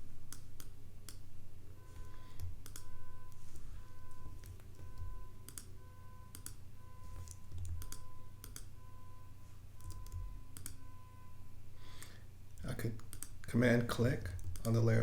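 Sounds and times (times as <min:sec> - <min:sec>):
low electrical hum: 0:00.0 - 0:15.0
mouse and keyboard clicks: 0:07.2 - 0:08.7, 0:09.8 - 0:10.8, 0:13.0 - 0:13.4.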